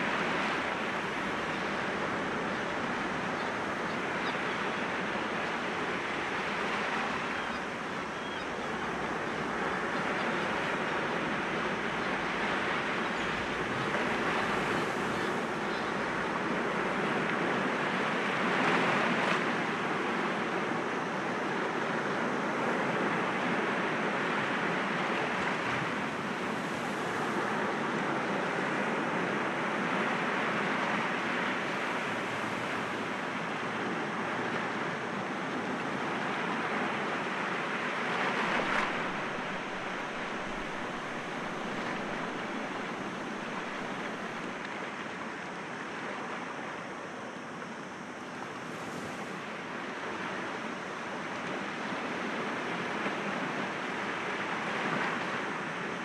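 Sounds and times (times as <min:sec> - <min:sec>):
sea waves breaking on rocks: 0:30.5 - 0:34.2, 0:37.8 - 0:44.7, 0:48.4 - 0:50.6.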